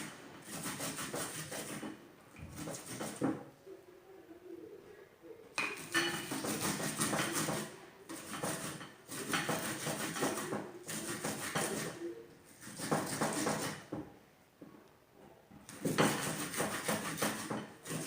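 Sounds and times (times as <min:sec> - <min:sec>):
onion rasping on metal grater: 0:00.0 - 0:01.9, 0:06.2 - 0:12.0, 0:12.6 - 0:13.8, 0:15.8 - 0:18.0.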